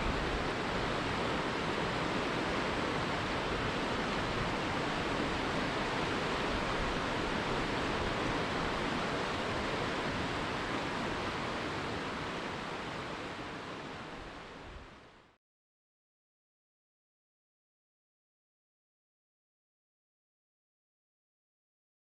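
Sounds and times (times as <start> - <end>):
water rushing over rapids: 0.0 - 15.4.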